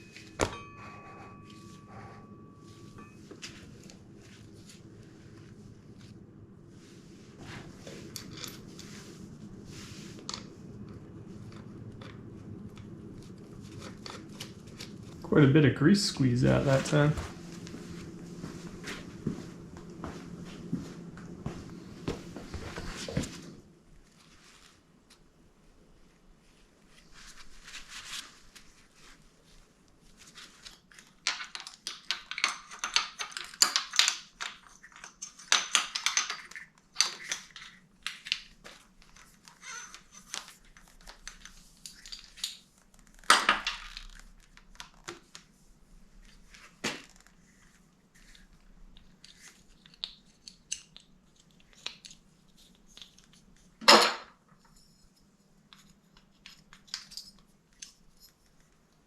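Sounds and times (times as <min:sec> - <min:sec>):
rustling: 0:16.0 - 0:31.2.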